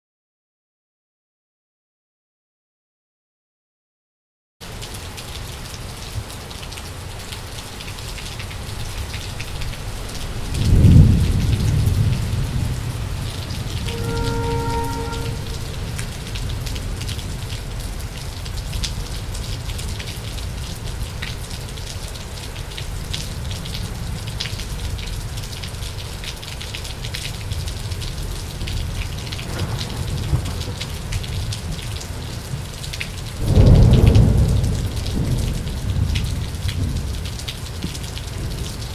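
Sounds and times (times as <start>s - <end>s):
heavy rain: 4.6s - 38.9s
thunderclap rumbling: 8.9s - 21.2s, 27.4s - 38.9s.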